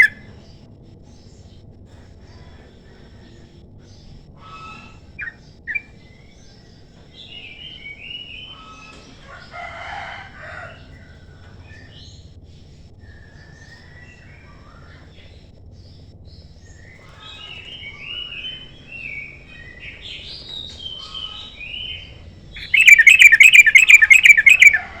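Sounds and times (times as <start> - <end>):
fast bird trill: 0.0 - 0.2, 4.4 - 6.0, 16.8 - 25.0
bulbul singing warbling phrases: 17.3 - 25.0.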